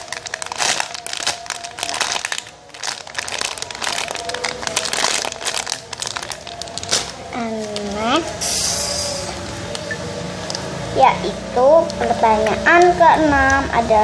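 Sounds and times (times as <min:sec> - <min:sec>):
plastic wrapping crinkling: 0:00.0 - 0:10.7.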